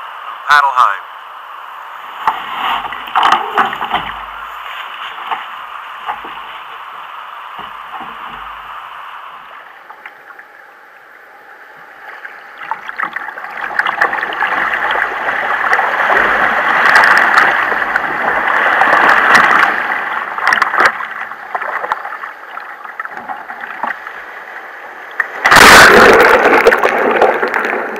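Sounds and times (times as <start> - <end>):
water rushing against kayak: 1.6 - 27.9
sudden loud burst of noise: 25.4 - 27.4.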